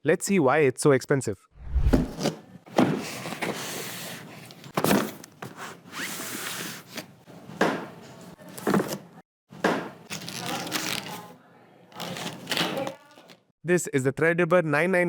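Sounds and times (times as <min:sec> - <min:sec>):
packaging rubbing and scraping: 0:12.0 - 0:13.4.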